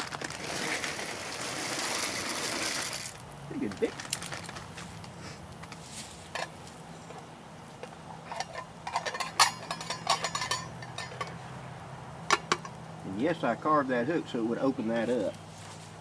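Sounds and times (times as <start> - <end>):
metal pot and lid clinking: 8.2 - 11.4, 12.3 - 12.8.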